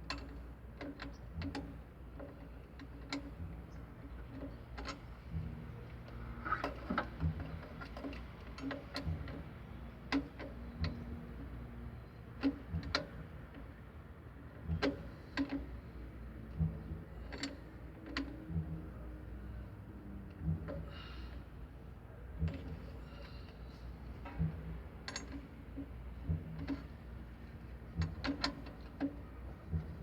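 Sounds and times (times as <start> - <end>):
low steady background hum: 0.0 - 30.0
sharp clicks and light knocks: 28.0 - 30.0.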